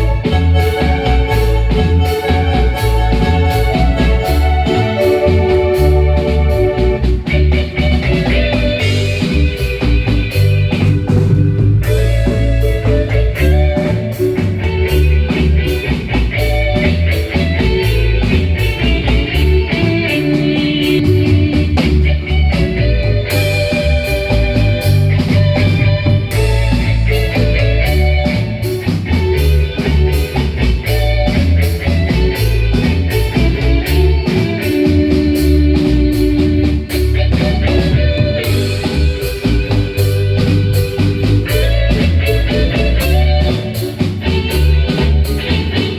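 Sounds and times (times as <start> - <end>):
fast marimba notes: 0.0 - 28.5
pulsing bass line: 0.0 - 45.9.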